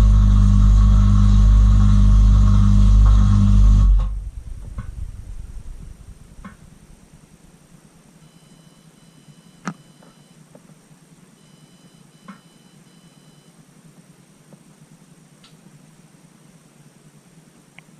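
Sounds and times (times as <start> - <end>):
dishwasher pump motor humming: 0.0 - 5.0
water rumble: 0.0 - 7.8.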